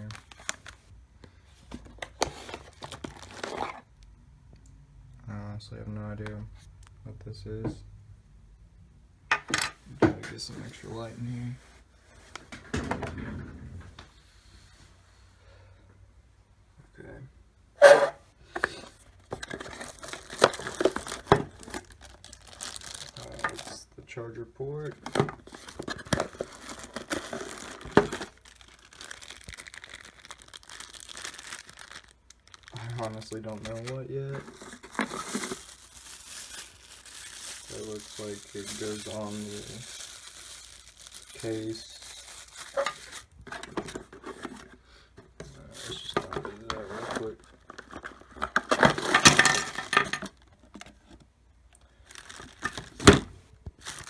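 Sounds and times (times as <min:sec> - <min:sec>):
plastic packaging crinkling: 0:00.0 - 0:00.9, 0:02.0 - 0:03.9, 0:18.6 - 0:23.8, 0:24.8 - 0:44.8, 0:45.6 - 0:54.0.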